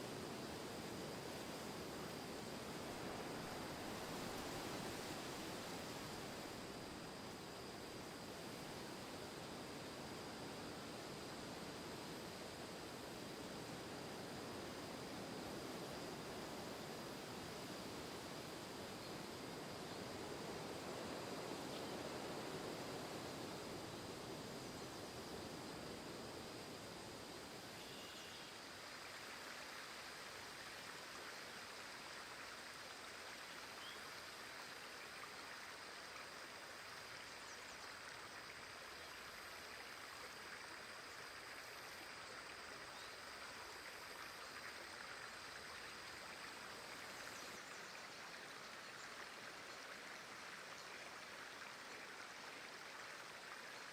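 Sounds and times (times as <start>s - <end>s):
faint high steady tone: 27.8s - 28.6s.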